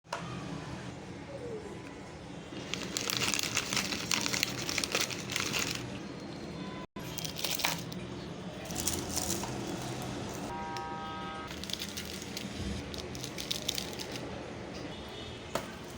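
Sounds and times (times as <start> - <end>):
plastic wrapper crinkling: 2.6 - 6.0, 7.0 - 8.0, 8.7 - 10.5, 11.5 - 14.4.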